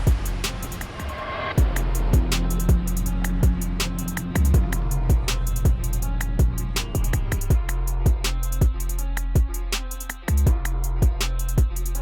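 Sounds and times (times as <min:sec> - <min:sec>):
kick drum: 0:00.0 - 0:00.4, 0:01.6 - 0:03.7, 0:04.4 - 0:08.8, 0:09.4 - 0:09.6, 0:10.4 - 0:11.8
guitar: 0:00.0 - 0:12.0
hi-hat ticks: 0:00.0 - 0:12.0.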